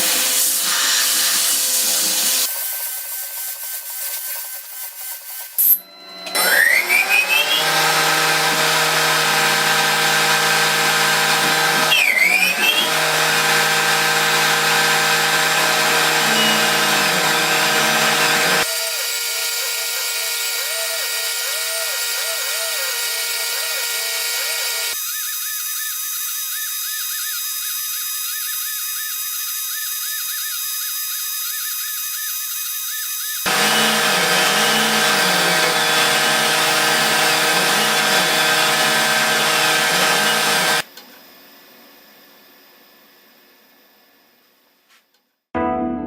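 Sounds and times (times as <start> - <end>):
machine high whine: 15.4 - 25.0.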